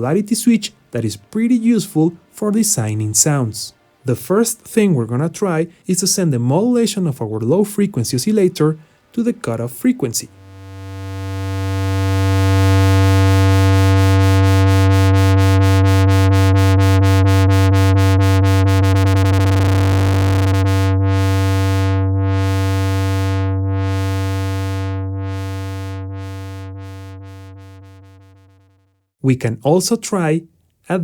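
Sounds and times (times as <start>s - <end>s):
pulsing analog synthesizer note: 10.3s - 28.9s.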